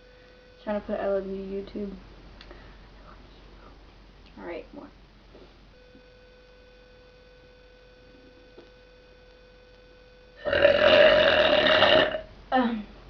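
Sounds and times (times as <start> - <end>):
faint steady tone: 0.0 - 1.8, 5.7 - 10.4
girl burping: 10.4 - 12.9.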